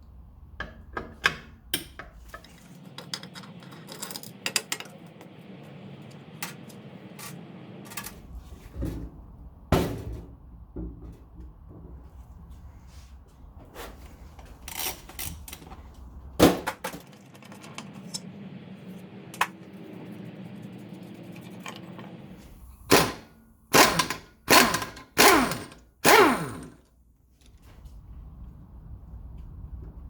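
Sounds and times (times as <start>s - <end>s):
steady tool noise: 17.4s - 26.8s.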